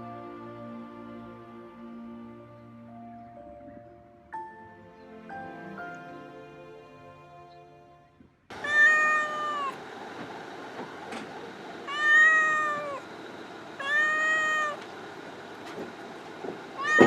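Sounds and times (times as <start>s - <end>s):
cat meowing: 8.6s - 9.8s, 11.9s - 13.0s, 13.8s - 14.9s, 16.8s - 17.0s.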